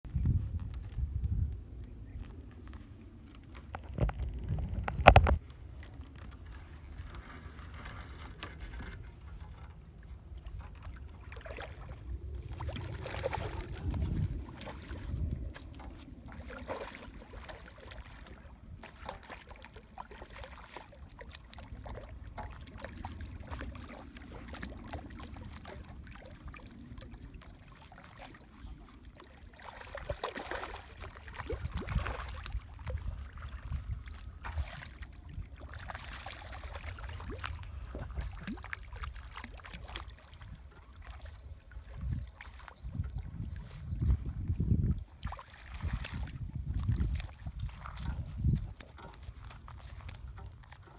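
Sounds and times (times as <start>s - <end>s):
wind buffeting microphone: 0.0s - 2.9s, 3.6s - 18.9s, 29.9s - 50.9s
water lapping: 1.8s - 50.9s.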